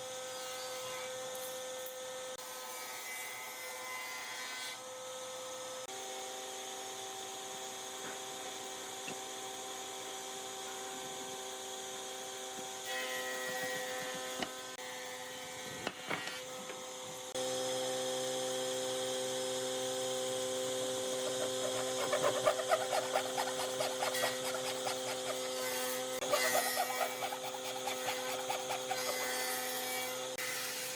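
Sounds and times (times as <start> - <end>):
power tool motor running: 13.2 - 30.9
tool grinding into wood: 21.1 - 30.9.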